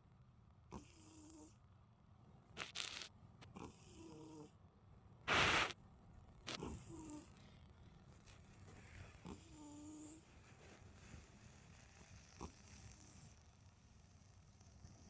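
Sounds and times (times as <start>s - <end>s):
cat snoring: 0.7s - 1.6s, 3.6s - 4.5s, 6.5s - 8.0s, 9.1s - 15.0s
short bursts of noise: 5.3s - 5.8s.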